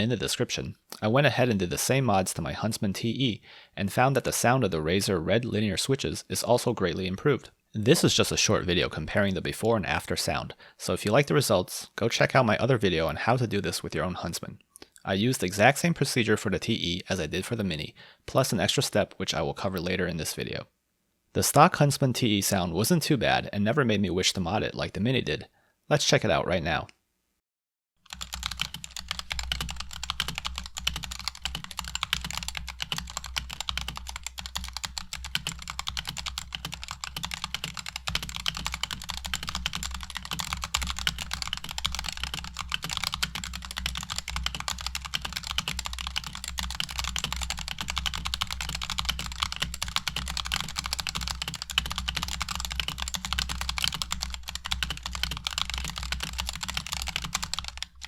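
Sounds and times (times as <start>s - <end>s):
fast keyboard typing: 28.0s - 58.0s.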